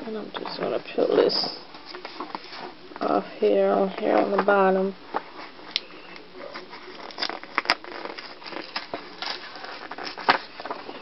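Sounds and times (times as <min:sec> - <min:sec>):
packaging crackling and rustling: 0:03.8 - 0:11.0.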